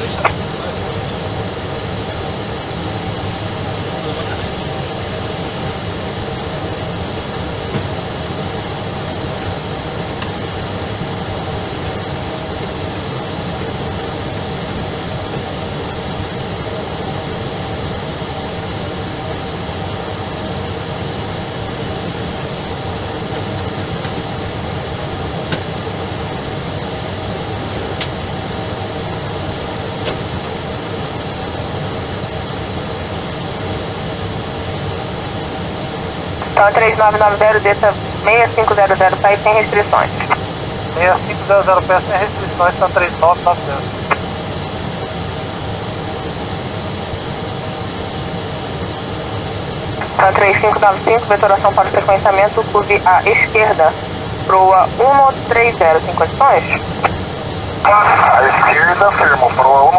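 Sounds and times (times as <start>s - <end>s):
radio hiss and hum: 0.0s - 1.1s, 2.6s - 6.5s, 36.3s - 44.5s, 49.9s - 59.9s.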